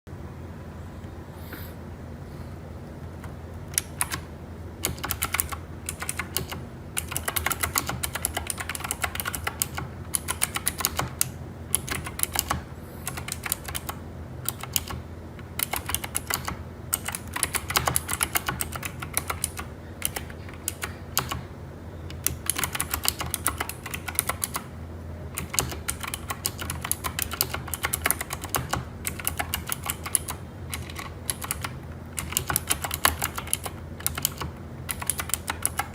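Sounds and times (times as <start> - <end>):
mechanical keyboard typing: 3.2 - 21.5, 22.1 - 35.9.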